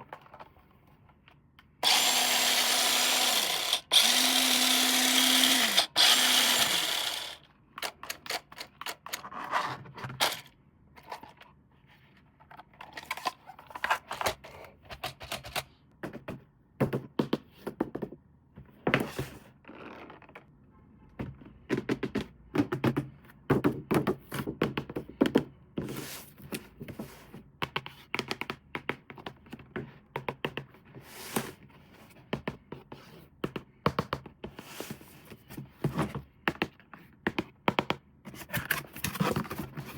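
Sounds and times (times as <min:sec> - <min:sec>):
small motor whirring: 0:01.8 - 0:07.4.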